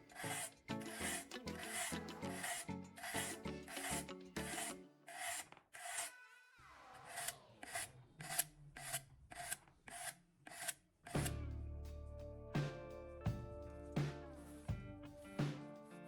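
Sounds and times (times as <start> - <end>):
background music: 0.0 - 5.1, 11.2 - 16.0
knife rasping on sharpener: 0.0 - 6.1, 7.7 - 11.3.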